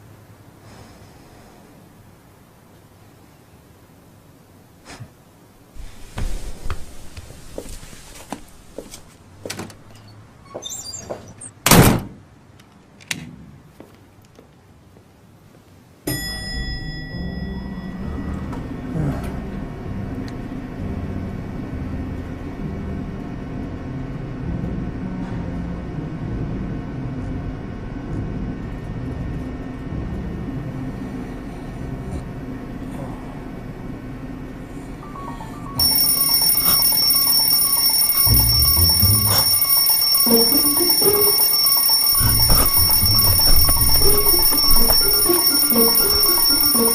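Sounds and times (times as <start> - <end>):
faint steady hums: 13.5 - 46.9
high tinkling: 35.8 - 46.9.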